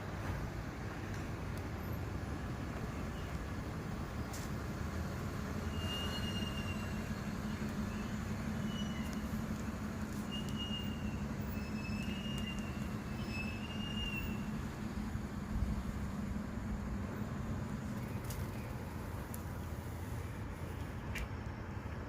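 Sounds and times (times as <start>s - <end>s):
garbage truck engine rumble: 0.0s - 22.0s
short high-pitched squeals: 5.6s - 9.4s, 10.1s - 14.5s.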